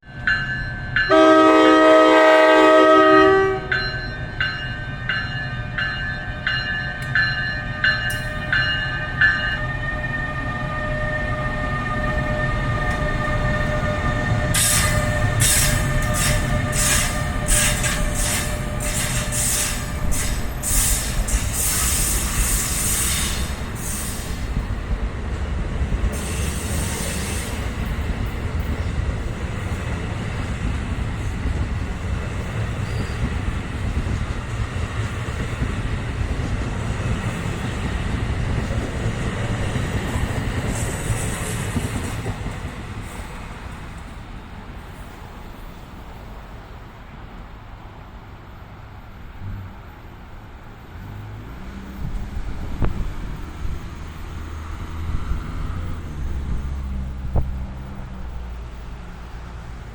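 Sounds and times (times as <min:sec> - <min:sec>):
train rumbling past: 0:00.0 - 0:59.9
high wheel squeals: 0:07.8 - 0:24.6, 0:32.8 - 0:33.4.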